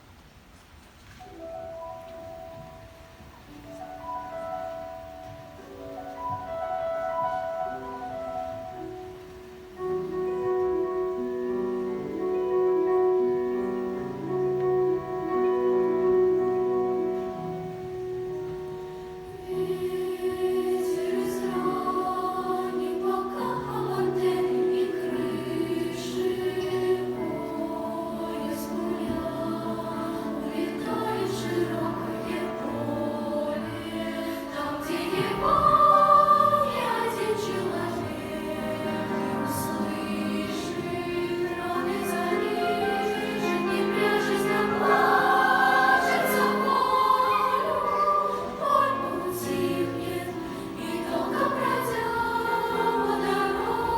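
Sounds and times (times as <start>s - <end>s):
choir singing: 19.2s - 53.9s.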